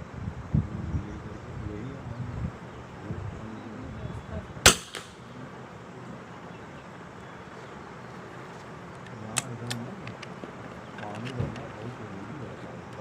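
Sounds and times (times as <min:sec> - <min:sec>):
rifle shot: 0:04.6 - 0:05.2.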